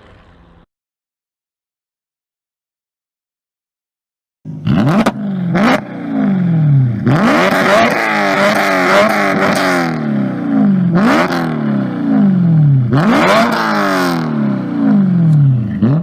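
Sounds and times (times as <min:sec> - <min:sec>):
car engine revving: 0:04.5 - 0:16.0.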